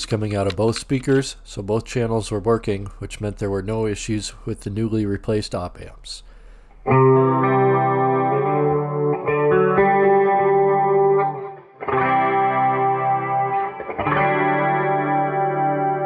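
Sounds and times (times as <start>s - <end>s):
electric guitar chords through amp: 6.9s - 16.0s.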